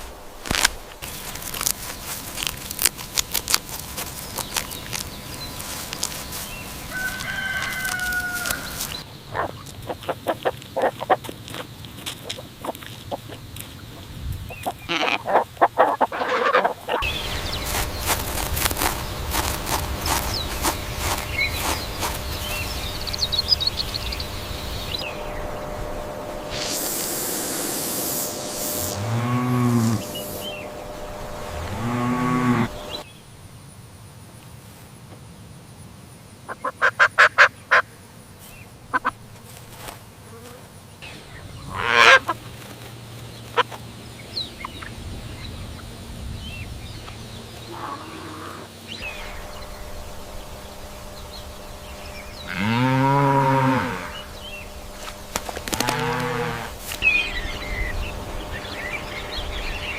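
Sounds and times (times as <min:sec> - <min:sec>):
cattle mooing: 0:28.9 - 0:30.4, 0:31.5 - 0:33.0, 0:47.7 - 0:48.7, 0:52.4 - 0:54.4, 0:55.7 - 0:56.8.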